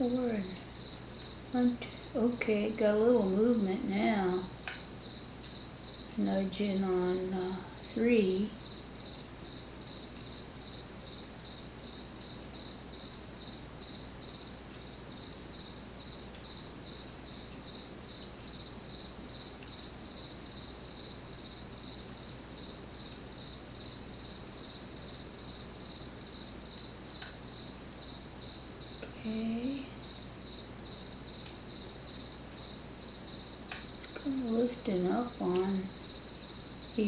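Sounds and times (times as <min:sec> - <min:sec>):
cricket chirping: 0:00.0 - 0:37.0.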